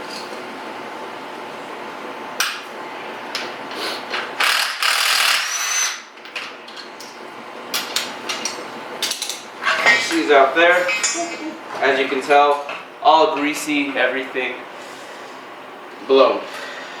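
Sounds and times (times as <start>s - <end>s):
ratchet clicking: 4.4s - 6.0s
noisy tool burst: 4.4s - 6.1s.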